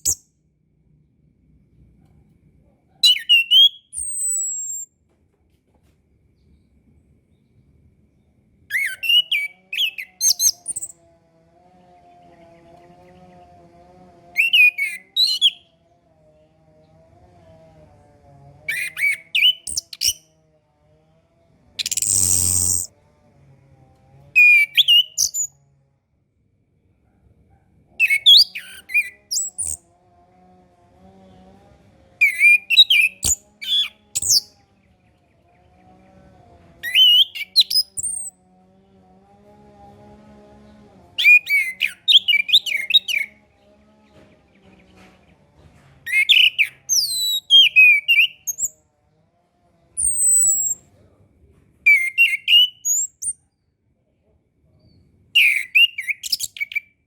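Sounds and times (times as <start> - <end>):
faint low hum: 0.0 - 47.7, 48.3 - 55.4
thrush singing whistled phrases: 8.7 - 10.9, 14.4 - 15.6, 36.9 - 38.3, 51.9 - 53.2.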